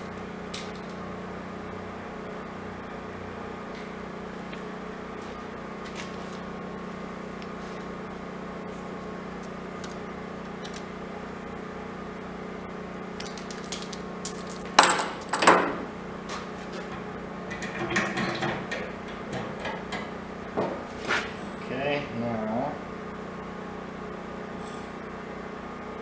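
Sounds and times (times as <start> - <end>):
high metallic ringing: 13.7 - 15.0
metal tools clinking on workbench: 13.7 - 15.5.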